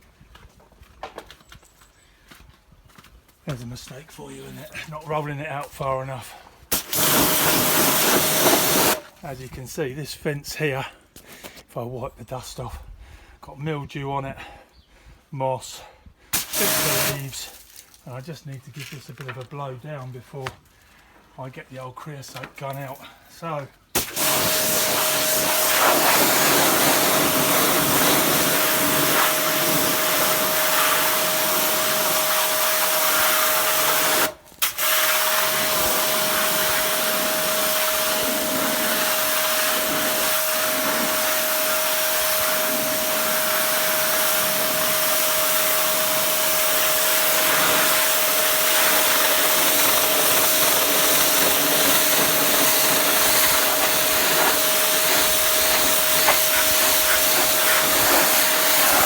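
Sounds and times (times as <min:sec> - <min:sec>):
pressure washer motor hum: 0:06.7 - 0:09.0, 0:16.4 - 0:17.2, 0:24.0 - 0:59.0
water jet spraying fence: 0:06.7 - 0:09.0, 0:16.4 - 0:17.7, 0:24.0 - 0:59.0.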